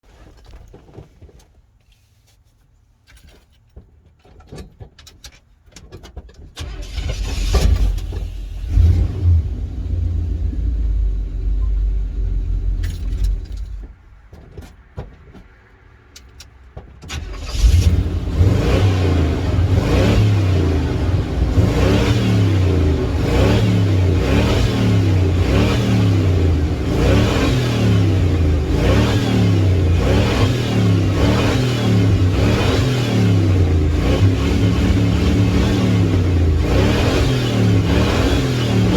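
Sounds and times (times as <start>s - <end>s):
truck engine revving: 6.8s - 13.5s, 17.2s - 38.9s.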